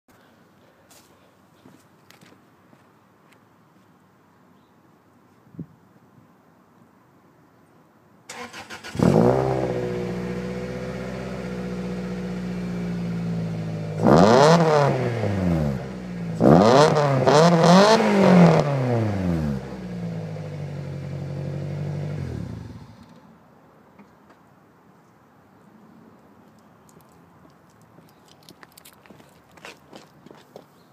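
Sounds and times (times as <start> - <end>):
car engine idling and revving: 8.9 - 23.1.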